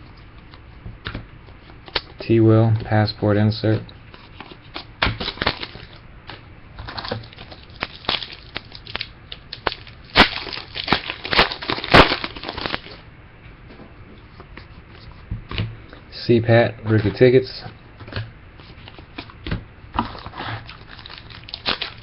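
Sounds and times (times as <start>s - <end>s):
cards being handled: 3.7s - 8.7s
wrappers crinkling: 6.8s - 13.0s, 20.0s - 22.0s.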